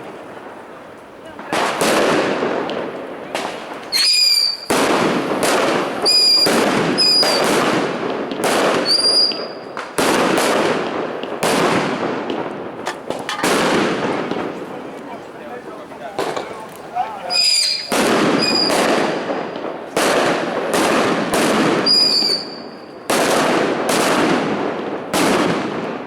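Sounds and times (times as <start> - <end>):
fireworks bangs echoing: 0.0 - 26.0
fireworks whistles: 3.4 - 14.5, 17.2 - 24.3.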